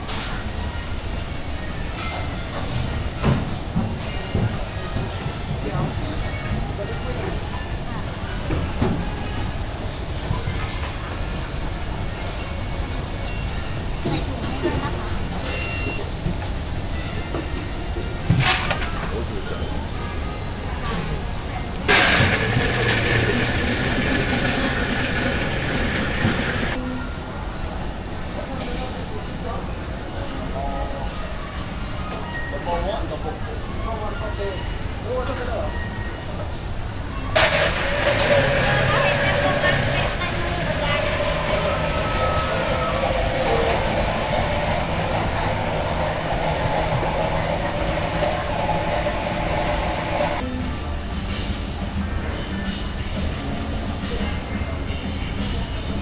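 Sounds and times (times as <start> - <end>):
train rail noise: 0.0 - 32.0, 36.5 - 54.2
vehicle noise with high whine: 37.4 - 50.4.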